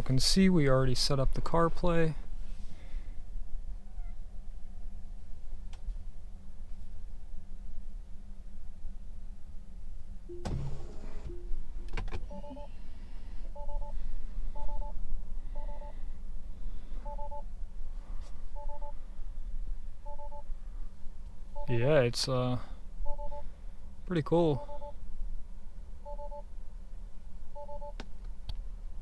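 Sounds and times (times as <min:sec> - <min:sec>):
steady low hum: 0:00.0 - 0:29.0
two-note electronic beeps: 0:10.3 - 0:12.7.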